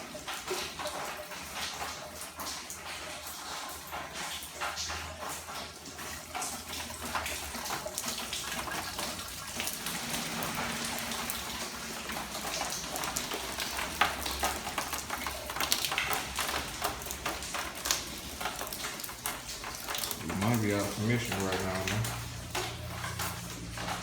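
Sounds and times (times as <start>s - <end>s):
water drips and splashes: 0.0s - 24.0s
heavy rain: 6.3s - 24.0s.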